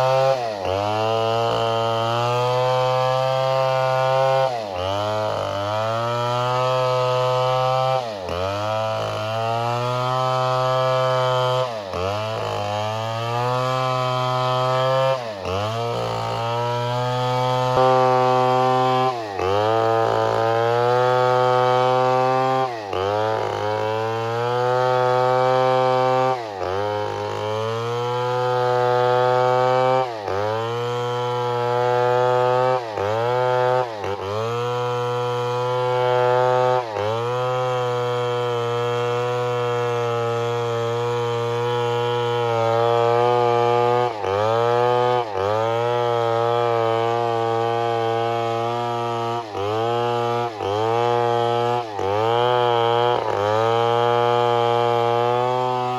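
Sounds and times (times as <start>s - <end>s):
chainsaw cutting at high revs: 0.0s - 55.9s.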